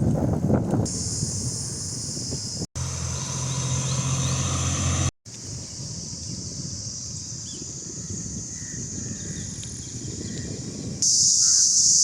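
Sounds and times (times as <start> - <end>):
high-pitched insect drone: 0.9 - 5.0, 11.0 - 12.0.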